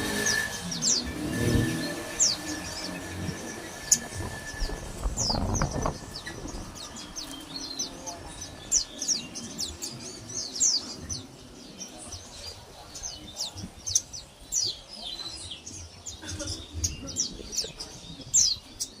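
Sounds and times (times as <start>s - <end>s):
bird chirping and twittering: 0.0s - 19.0s.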